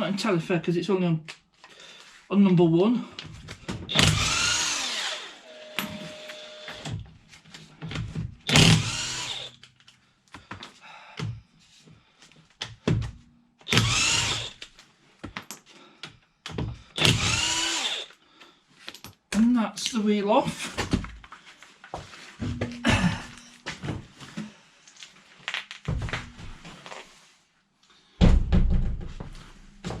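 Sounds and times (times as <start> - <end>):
impact wrench bursts: 3.9 - 6.9, 8.5 - 9.6, 13.7 - 14.6, 17.0 - 18.1.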